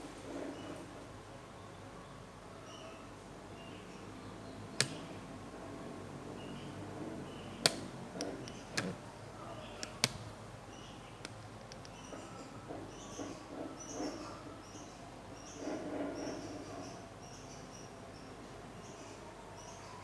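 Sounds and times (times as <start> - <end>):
small birds chirping: 6.4 - 20.0.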